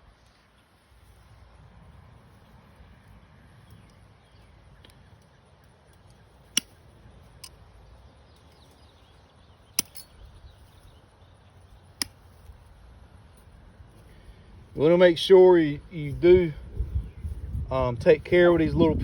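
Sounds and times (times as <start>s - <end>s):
wire snips cutting wire: 6.0s - 6.8s, 9.8s - 10.1s, 12.0s - 12.6s.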